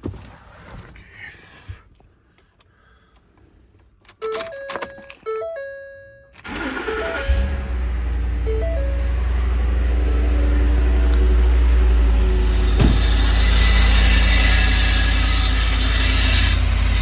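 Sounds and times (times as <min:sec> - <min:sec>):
keys jangling: 0:04.0 - 0:05.3
car warning chime: 0:04.2 - 0:12.4
car engine cranking and starting: 0:06.4 - 0:15.8.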